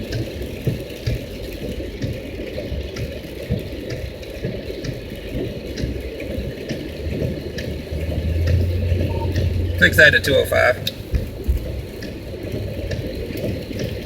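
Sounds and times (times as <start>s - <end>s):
washing watery noise: 0.8s - 14.0s
low hum: 7.1s - 11.1s.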